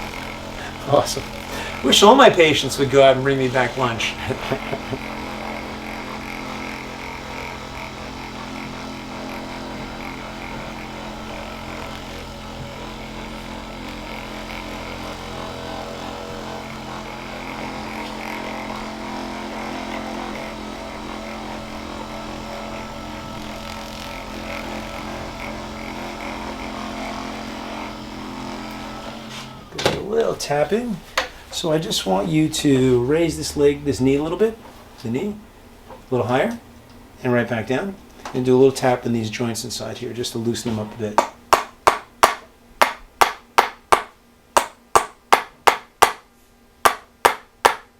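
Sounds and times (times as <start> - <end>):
massage gun motor buzz: 0.0 - 29.9.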